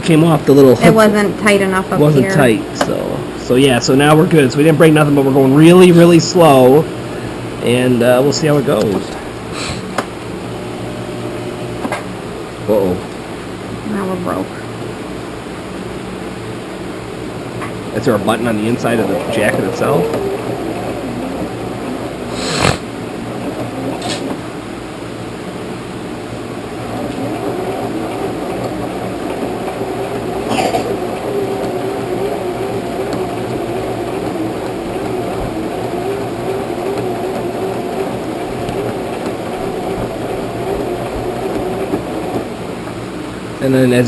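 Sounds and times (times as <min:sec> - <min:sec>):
sewing machine running: 0:17.9 - 0:24.4, 0:26.6 - 0:42.6.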